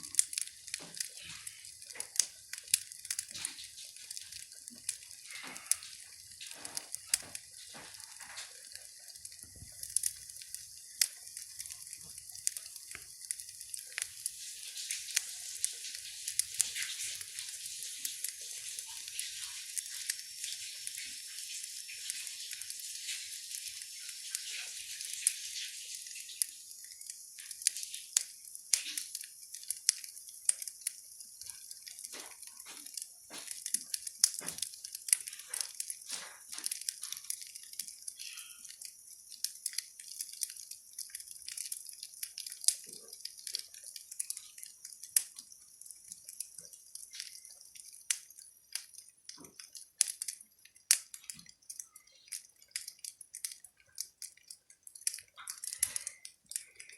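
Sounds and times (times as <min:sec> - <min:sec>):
wood fire crackling: 0:00.0 - 0:56.9.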